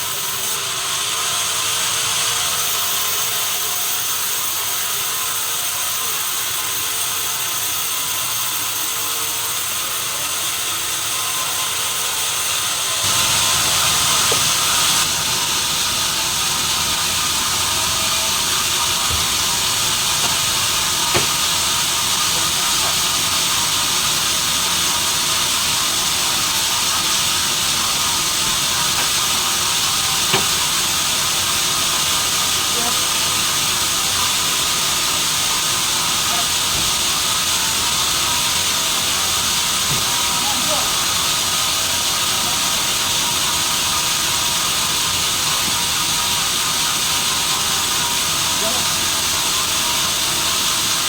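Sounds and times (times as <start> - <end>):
sawmill machinery hissing: 0.0 - 51.0
short knocks: 14.2 - 14.6, 19.0 - 21.6, 28.4 - 29.6, 30.2 - 30.8.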